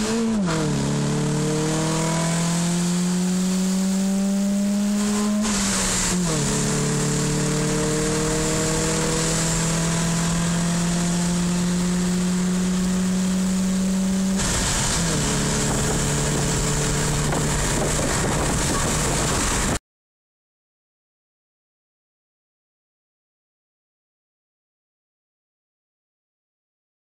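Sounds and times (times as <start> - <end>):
car engine revving: 0.0 - 19.8.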